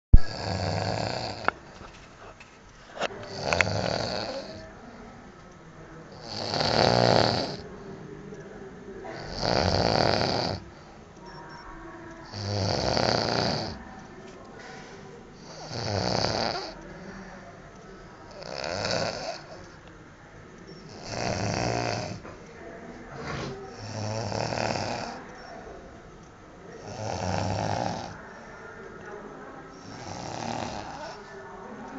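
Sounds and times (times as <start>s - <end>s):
quiet breathing: 0.1s - 31.9s
man snoring loudly: 0.3s - 1.5s, 3.3s - 4.6s, 6.2s - 7.6s, 9.2s - 10.6s, 12.3s - 13.8s, 15.4s - 16.8s, 18.3s - 19.6s, 20.9s - 22.2s, 23.7s - 25.2s, 26.8s - 28.2s, 29.8s - 31.2s.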